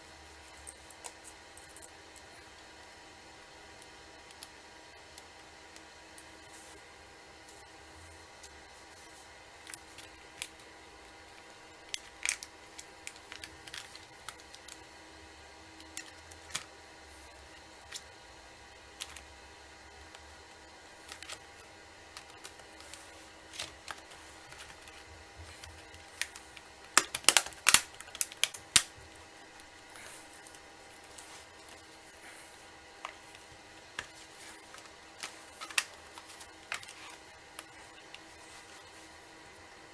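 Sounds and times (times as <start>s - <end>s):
small parts clicking and tapping: 11.8s - 14.8s, 22.2s - 29.0s.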